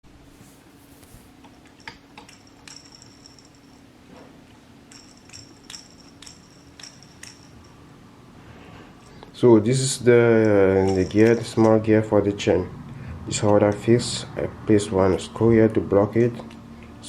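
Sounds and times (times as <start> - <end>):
steady low hum: 0.0 - 17.0
small hard parts clicking: 4.9 - 7.8, 10.3 - 12.0.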